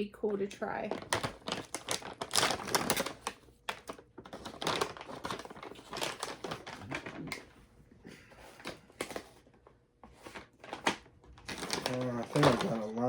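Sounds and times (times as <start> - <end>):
plastic snack bag crinkling: 0.7 - 7.6, 10.1 - 13.0.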